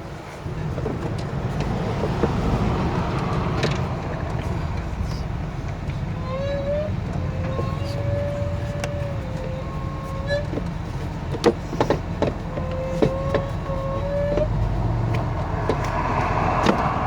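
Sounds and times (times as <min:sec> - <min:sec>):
plastic clicks and knocks: 0:10.4 - 0:13.7
low rumble: 0:13.6 - 0:17.0.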